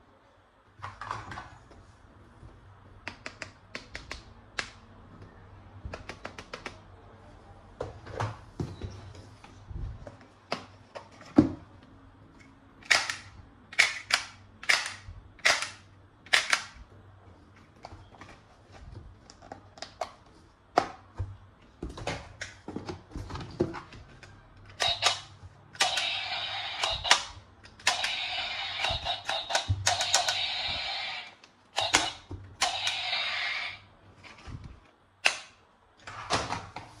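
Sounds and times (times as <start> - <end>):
plastic toy guns snapping: 12.8 - 16.8, 35.2 - 35.6
toy gun rattle: 24.8 - 25.2, 25.8 - 31.1.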